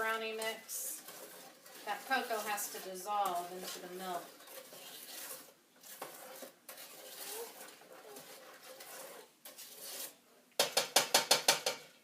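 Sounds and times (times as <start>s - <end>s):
faint stirring in saucepan: 0.0s - 12.0s.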